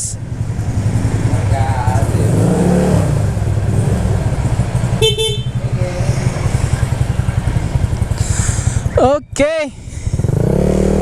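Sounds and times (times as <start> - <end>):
scooter engine running: 0.2 - 11.0
vehicle horn beeping: 4.9 - 5.8.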